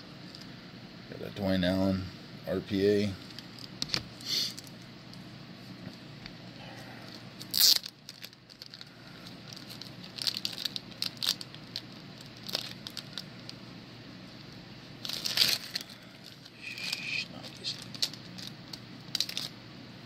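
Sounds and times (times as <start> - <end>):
plastic sleeves crinkling and clicking: 7.4 - 13.6, 15.0 - 19.6.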